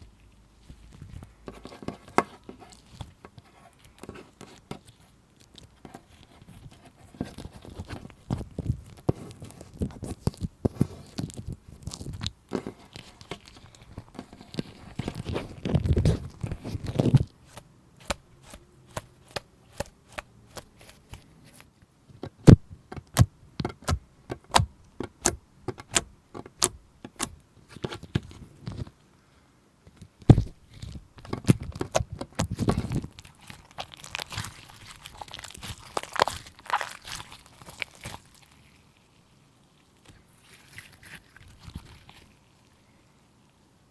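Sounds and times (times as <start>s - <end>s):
slime squished by hand: 30.4s - 42.8s
wet crackling: 30.6s - 42.9s.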